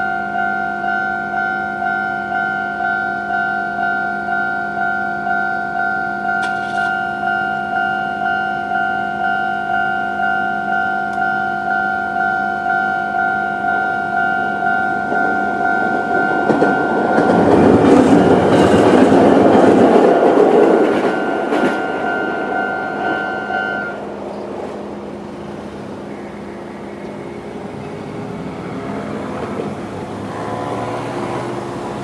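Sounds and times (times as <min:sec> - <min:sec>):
crossing warning bell ringing: 0:00.0 - 0:32.0
train rumbling over crossing: 0:00.0 - 0:32.0.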